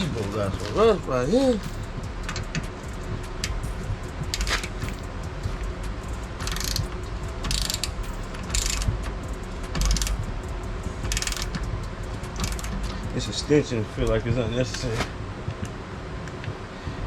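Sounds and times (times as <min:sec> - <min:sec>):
socket ratchet clicking: 0:01.6 - 0:13.2.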